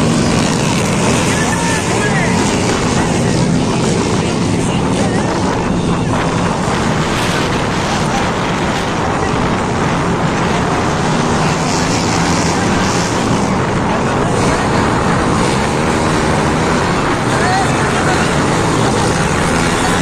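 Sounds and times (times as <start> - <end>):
dense rushing noise: 0.0 - 20.0
dirt bike engine running: 0.0 - 20.0.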